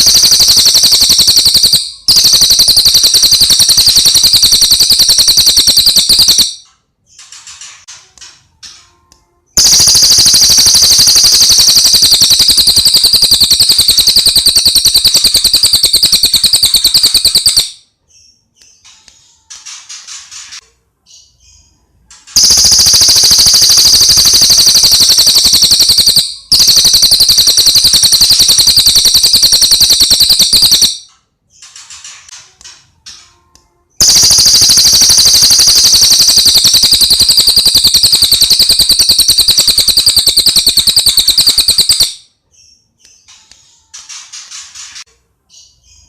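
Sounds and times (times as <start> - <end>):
bird chirping: 9.6 - 19.5, 21.0 - 31.9.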